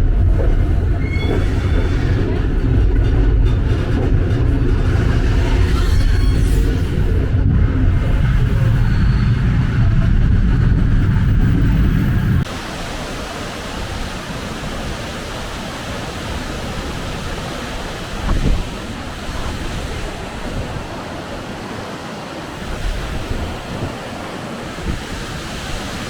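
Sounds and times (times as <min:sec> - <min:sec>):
water rushing: 0:12.4 - 0:26.0.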